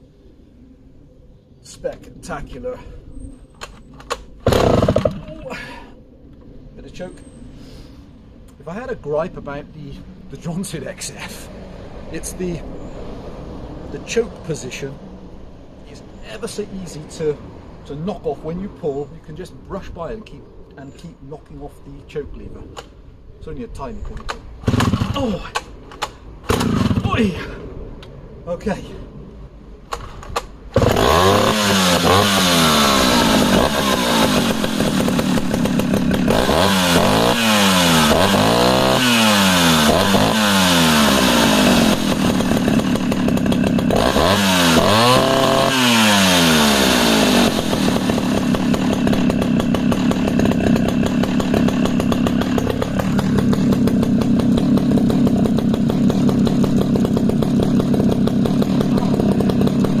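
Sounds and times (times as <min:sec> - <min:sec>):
two-stroke chainsaw revving: 0:04.4 - 0:05.4, 0:24.6 - 0:25.7, 0:26.4 - 0:27.2, 0:30.7 - 1:00.0.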